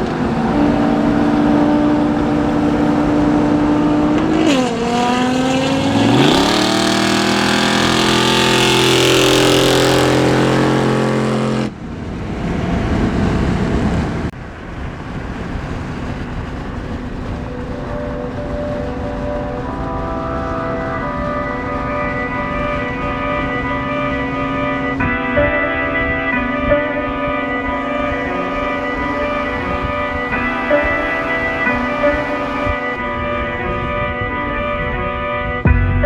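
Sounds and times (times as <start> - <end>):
car engine accelerating: 0.0 - 11.8, 26.4 - 33.0
road noise: 0.0 - 35.0.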